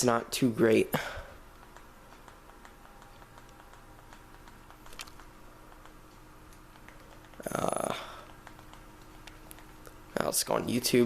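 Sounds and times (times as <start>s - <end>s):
ceiling fan humming: 0.0s - 11.0s
light ticks: 1.0s - 10.0s.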